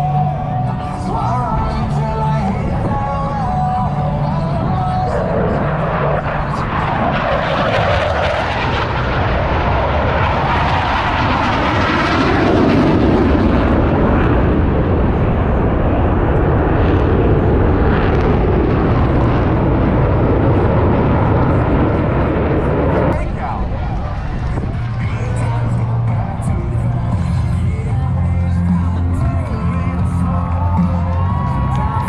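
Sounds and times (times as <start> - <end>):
jets flying past: 4.3 - 27.7.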